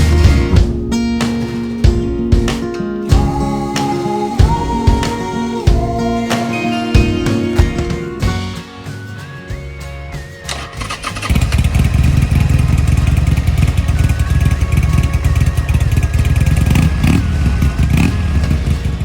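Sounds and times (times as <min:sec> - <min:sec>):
motorcycle engine running: 0:00.0 - 0:06.4, 0:10.5 - 0:19.0
guitar music: 0:00.0 - 0:19.0.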